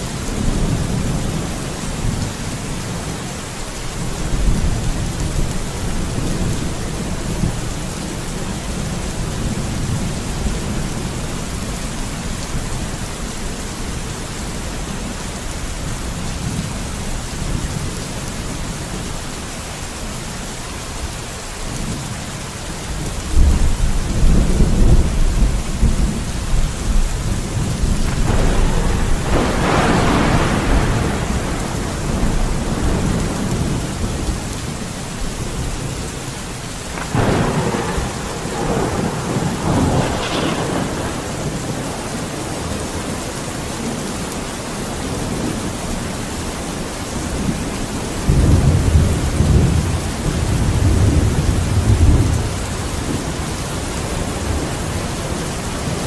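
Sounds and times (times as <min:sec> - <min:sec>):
steady rain: 0:00.0 - 0:56.0
rolling thunder: 0:23.2 - 0:43.2, 0:47.2 - 0:56.0
sharp thunder crack: 0:27.5 - 0:34.2, 0:37.0 - 0:42.0.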